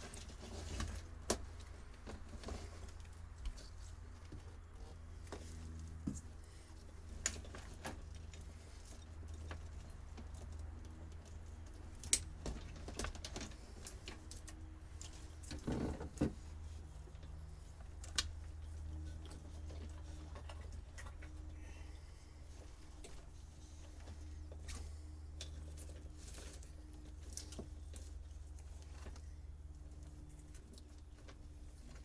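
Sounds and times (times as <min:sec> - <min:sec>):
rustling scrape: 0:00.0 - 0:09.2
steady low hum: 0:00.0 - 0:32.0
clicks and rattles of wiring fittings: 0:07.0 - 0:21.5.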